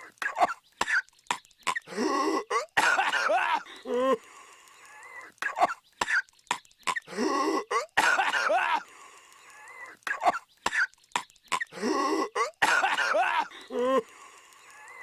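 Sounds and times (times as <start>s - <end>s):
cartoon voice coughing: 0.2s - 1.0s, 11.5s - 14.0s
faint wheezing breath: 3.6s - 5.4s, 8.8s - 10.0s, 13.4s - 15.0s.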